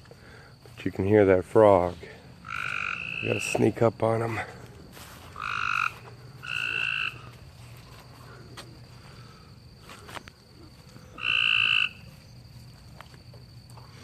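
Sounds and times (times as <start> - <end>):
frog calling: 2.2 - 12.4.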